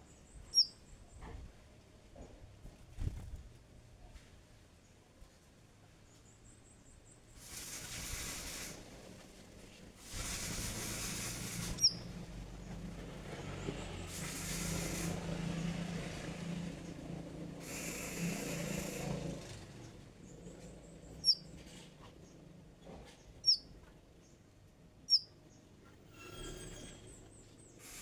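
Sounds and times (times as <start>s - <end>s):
songbird chirping: 0.0s - 1.2s, 20.2s - 21.6s, 23.2s - 25.7s
hiss and low hum: 6.0s - 23.8s, 27.6s - 28.0s.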